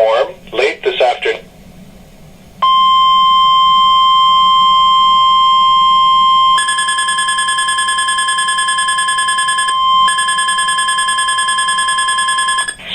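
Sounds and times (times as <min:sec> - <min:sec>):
higher pulsing beep tone: 0:02.6 - 0:12.9
steady warning alarm tone: 0:02.6 - 0:12.9.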